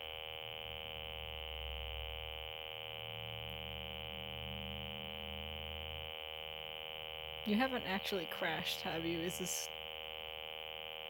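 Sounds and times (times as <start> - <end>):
buzzy drone: 3.0 - 6.4, 7.4 - 9.7.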